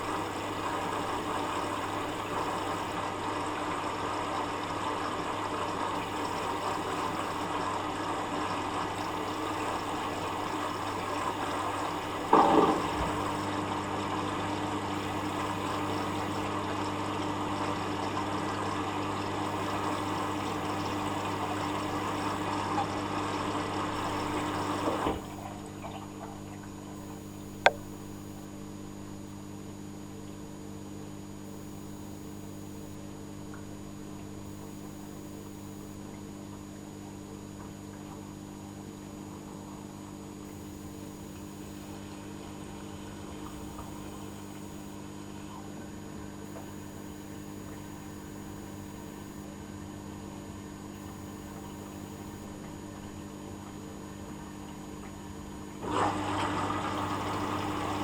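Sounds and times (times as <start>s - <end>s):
water rushing through washing machine: 0.0s - 27.0s, 54.0s - 58.0s
washing machine humming: 0.0s - 58.0s
sharp click: 27.4s - 28.3s.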